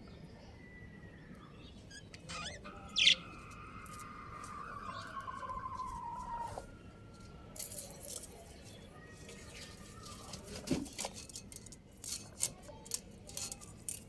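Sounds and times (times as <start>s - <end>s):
budgerigars chirping: 1.8s - 6.5s.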